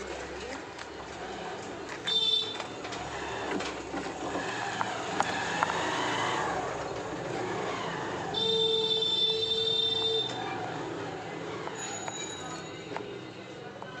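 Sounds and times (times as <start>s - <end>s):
traffic noise: 0.0s - 14.0s.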